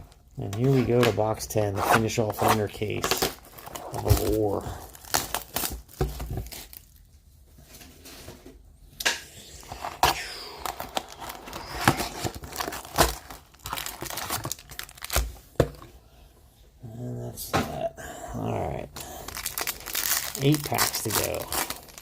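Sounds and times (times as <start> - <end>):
plastic wrap crinkling and tearing: 2.3 - 7.1, 9.6 - 15.4, 19.0 - 22.0.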